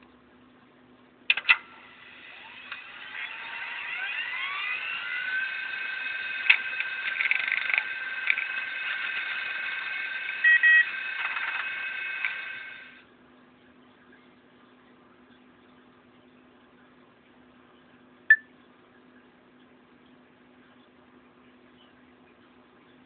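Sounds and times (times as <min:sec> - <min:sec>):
sharp clicks: 0:01.3 - 0:01.6, 0:06.4 - 0:08.5
synthesized upward-gliding tones: 0:02.1 - 0:06.5
short beeps: 0:18.3 - 0:18.5.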